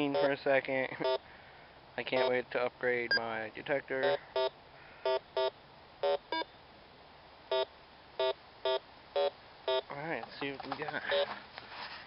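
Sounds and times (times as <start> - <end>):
metal detector beeps: 5.1 - 6.5, 7.5 - 9.9, 11.0 - 11.3.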